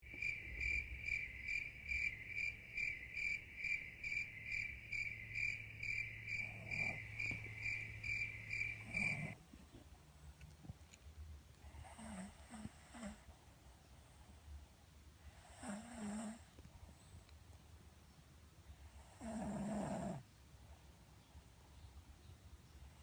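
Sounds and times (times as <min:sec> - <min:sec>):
cricket chirping: 0:00.0 - 0:09.4
dog snoring: 0:06.4 - 0:07.5, 0:08.8 - 0:09.4, 0:11.6 - 0:13.3, 0:15.3 - 0:16.5, 0:19.0 - 0:20.2.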